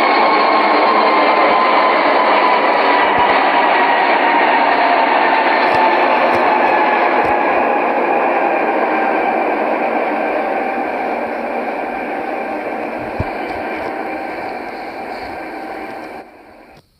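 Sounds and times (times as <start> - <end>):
faint steady tones: 0.0 - 16.9
steady hissing noise: 5.1 - 16.9.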